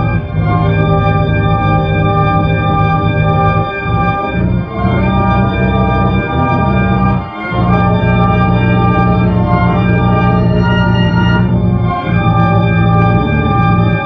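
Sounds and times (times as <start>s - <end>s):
electronic organ-like chord: 0.0s - 14.0s.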